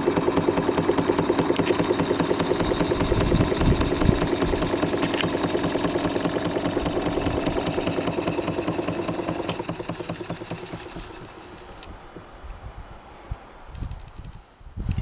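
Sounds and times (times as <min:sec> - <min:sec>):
steam engine exhaust chuffs: 0:00.0 - 0:11.8
mechanical clatter: 0:00.0 - 0:11.9.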